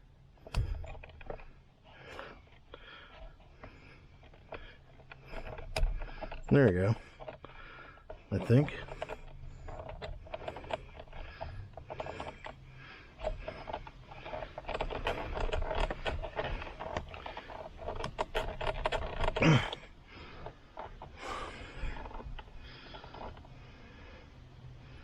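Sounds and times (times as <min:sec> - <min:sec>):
rustling: 0:00.0 - 0:25.0
screwdriver clicks and scrapes: 0:00.3 - 0:23.5
breathing: 0:00.4 - 0:25.0.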